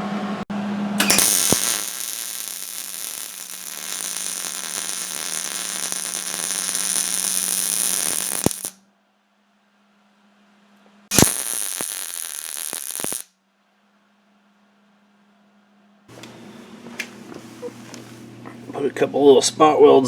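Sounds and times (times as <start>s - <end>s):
welding arc hissing: 1.0s - 8.8s, 11.1s - 13.3s.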